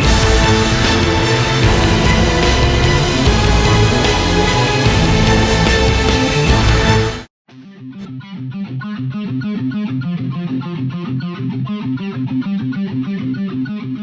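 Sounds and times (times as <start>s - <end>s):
plucked guitar riff: 0.0s - 7.2s
bass notes: 0.0s - 7.3s.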